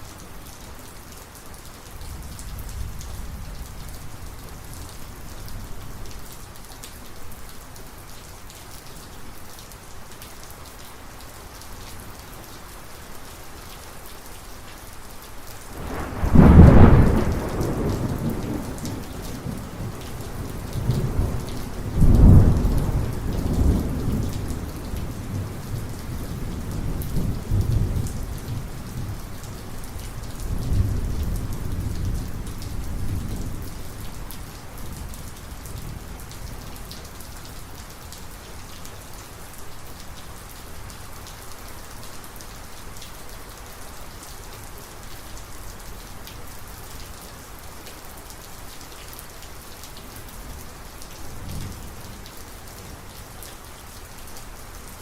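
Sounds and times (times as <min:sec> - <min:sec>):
heavy rain falling: 0:00.0 - 0:55.0
rolling thunder: 0:15.8 - 0:25.6.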